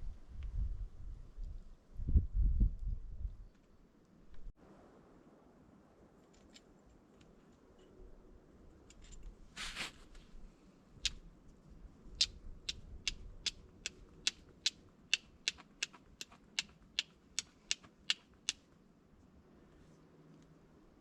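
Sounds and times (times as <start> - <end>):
sharp evenly spaced clicks: 12.2 - 18.7.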